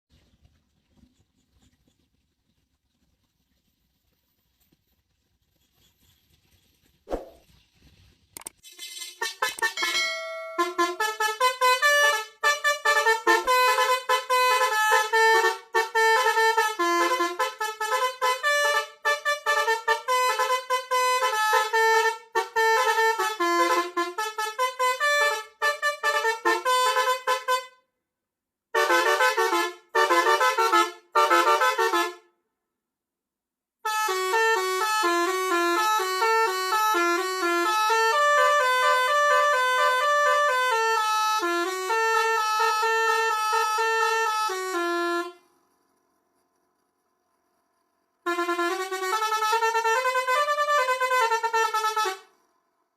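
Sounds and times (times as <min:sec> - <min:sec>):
multi-tone melody horn: 0:09.2 - 0:27.9, 0:28.8 - 0:32.3, 0:33.8 - 0:45.5, 0:48.2 - 0:52.4.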